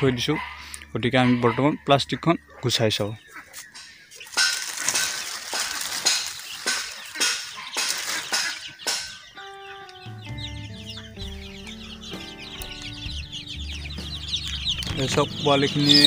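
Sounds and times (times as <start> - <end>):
background music: 0.0 - 16.0
chicks peeping: 0.0 - 16.0
plastic sheeting crinkling: 4.3 - 8.6.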